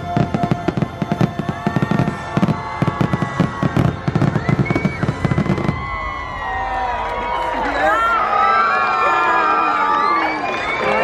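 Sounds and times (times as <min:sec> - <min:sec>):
orchestral music: 0:00.0 - 0:04.3
fireworks bangs and crackles: 0:00.0 - 0:07.0.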